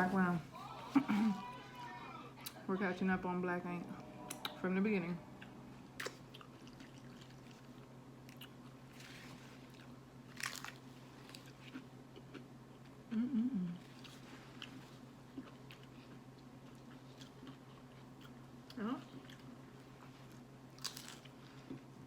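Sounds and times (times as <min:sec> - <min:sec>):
crunchy chewing: 0:06.0 - 0:12.5, 0:19.1 - 0:21.9.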